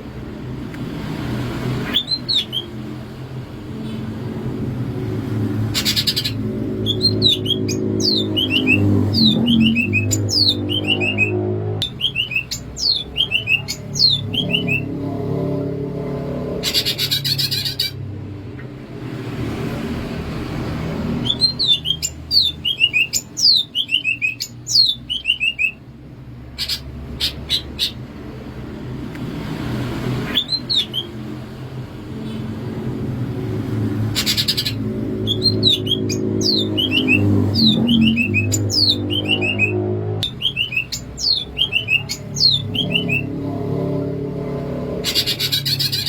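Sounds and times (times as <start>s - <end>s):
harsh rasping bird calls: 1.4s - 3.0s, 5.3s - 18.8s, 20.9s - 25.8s, 26.4s - 28.4s, 29.6s - 31.4s, 32.1s - 46.0s
bird whistled song: 1.8s - 2.8s, 5.8s - 14.9s, 21.2s - 25.8s, 30.3s - 31.2s, 34.2s - 43.4s, 45.0s - 46.0s.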